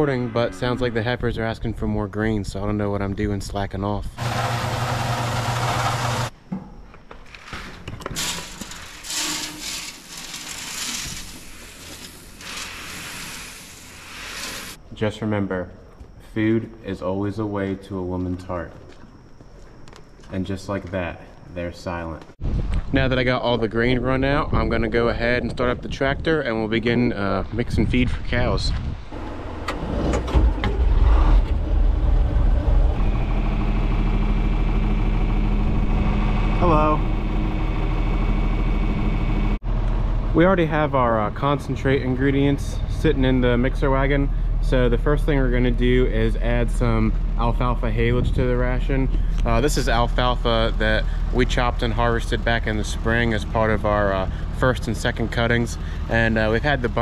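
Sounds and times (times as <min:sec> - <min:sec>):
steady high tone: 0:00.0 - 0:02.2, 0:32.5 - 0:39.6
grain pouring hiss: 0:08.2 - 0:14.8
tractor engine idling: 0:48.6 - 0:57.0.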